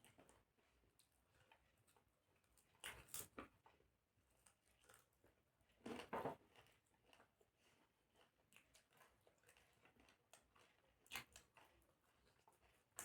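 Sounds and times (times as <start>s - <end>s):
chewing and mouth noises: 6.5s - 13.0s.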